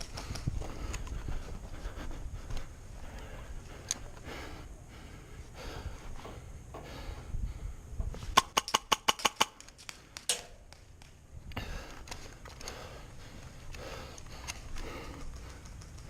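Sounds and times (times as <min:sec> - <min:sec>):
heavy breathing: 0:00.0 - 0:08.3, 0:11.4 - 0:16.0
airsoft gun rapid shots: 0:08.4 - 0:09.7.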